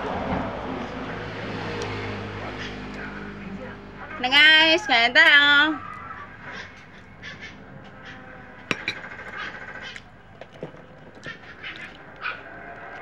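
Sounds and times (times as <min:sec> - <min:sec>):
spoon scraping a dish: 0:08.7 - 0:09.4.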